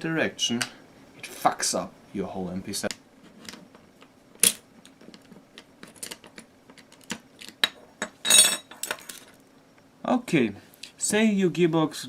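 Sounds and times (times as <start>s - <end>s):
parts clattering: 3.2s - 9.4s.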